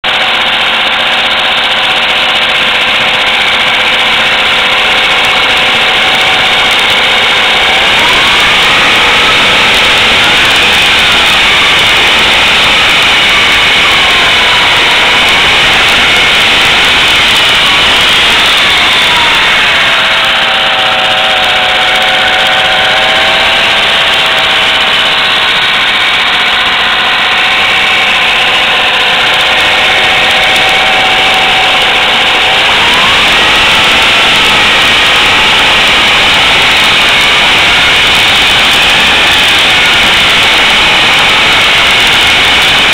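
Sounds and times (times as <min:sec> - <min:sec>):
outboard motor running: 0:00.0 - 0:42.9.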